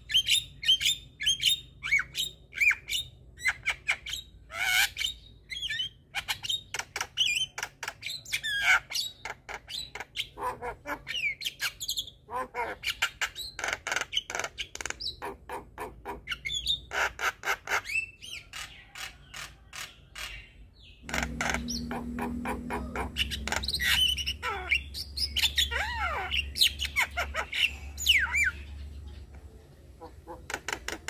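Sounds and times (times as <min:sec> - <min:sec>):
low hum: 0:21.0 - 0:25.4.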